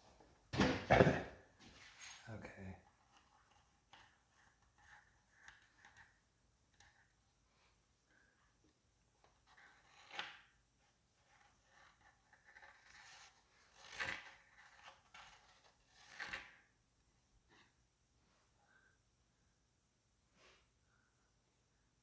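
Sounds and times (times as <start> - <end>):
faint scraping and rubbing: 1.6 - 8.4, 9.2 - 16.8.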